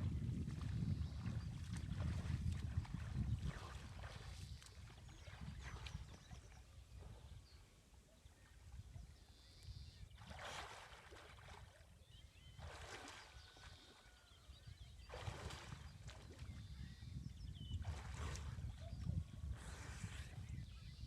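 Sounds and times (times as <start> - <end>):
water splashing: 10.2 - 11.9, 12.6 - 14.0
birds chirping: 11.9 - 18.0.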